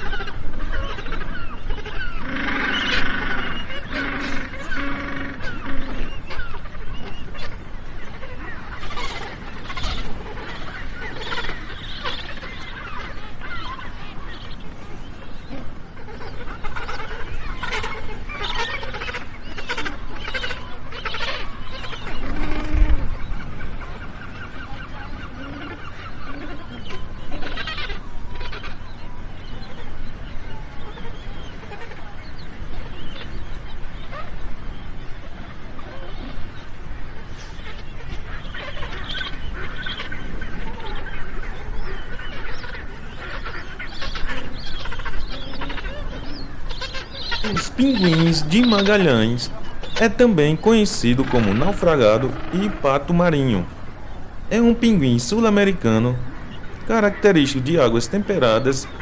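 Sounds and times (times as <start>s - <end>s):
penguins honking: 2.3s - 6.2s, 47.4s - 59.0s.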